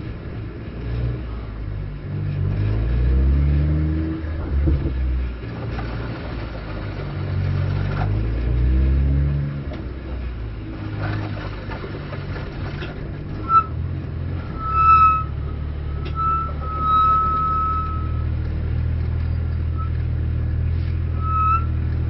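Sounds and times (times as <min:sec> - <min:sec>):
car engine accelerating: 0:00.0 - 0:22.0
short high beep: 0:16.1 - 0:18.3.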